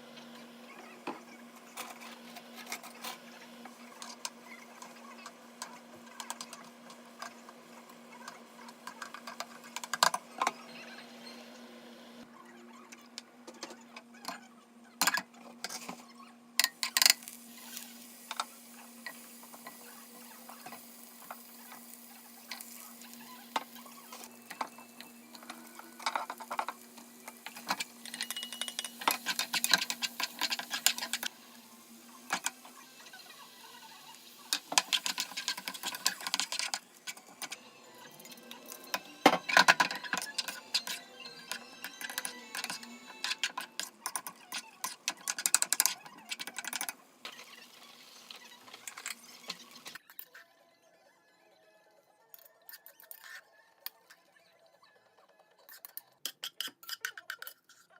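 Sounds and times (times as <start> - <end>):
utensils scraping cookware: 16.6 - 31.5, 33.9 - 37.6, 38.2 - 47.4.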